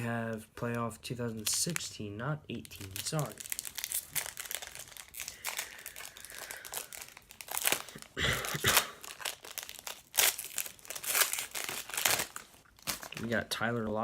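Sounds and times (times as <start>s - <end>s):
wrapper crinkling: 1.3s - 13.5s.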